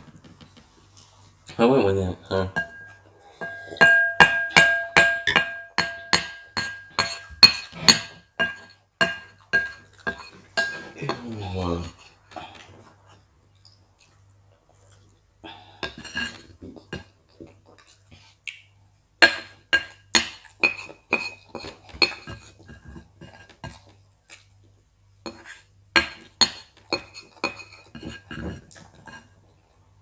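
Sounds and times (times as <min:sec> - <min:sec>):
utensils and dishes clinking: 0:01.7 - 0:12.0, 0:15.8 - 0:17.1.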